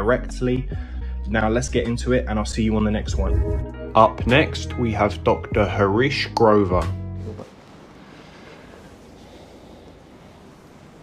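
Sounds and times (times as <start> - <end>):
room noise hum and hiss: 7.3 - 11.0.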